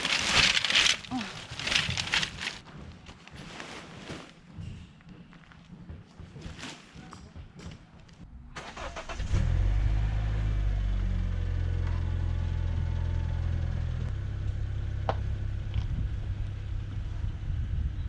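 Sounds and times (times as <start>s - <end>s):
car engine starting and running: 8.5s - 17.4s.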